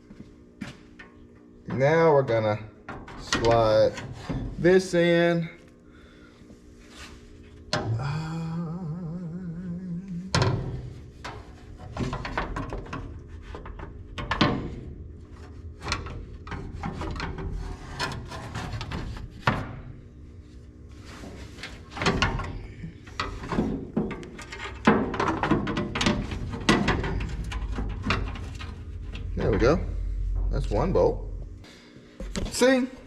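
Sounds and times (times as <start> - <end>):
plastic shroud scraping and rubbing: 16.4 - 19.5.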